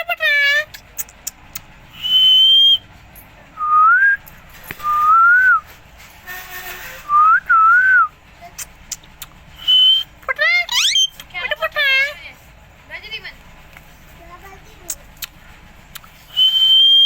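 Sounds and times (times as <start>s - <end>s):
whistled notes: 1.9s - 2.9s, 3.6s - 5.7s, 7.0s - 8.2s, 9.6s - 11.2s, 16.3s - 17.0s.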